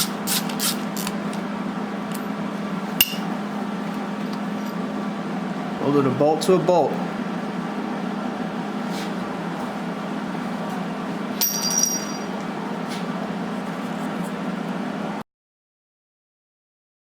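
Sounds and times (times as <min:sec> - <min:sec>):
low shop hum: 0:00.0 - 0:15.2
metal part clinking: 0:11.4 - 0:12.3.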